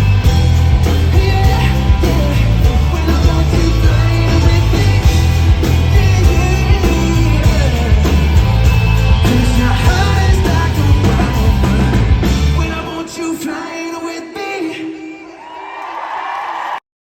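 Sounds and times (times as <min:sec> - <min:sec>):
heavy bass: 0:00.0 - 0:13.1
drums: 0:00.0 - 0:14.0
live pop band: 0:00.0 - 0:15.0
person singing: 0:00.0 - 0:15.6.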